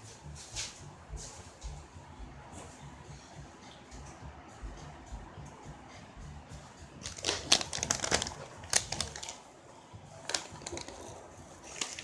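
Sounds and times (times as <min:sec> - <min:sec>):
chip bag crinkling: 0:07.0 - 0:09.4, 0:10.2 - 0:12.0.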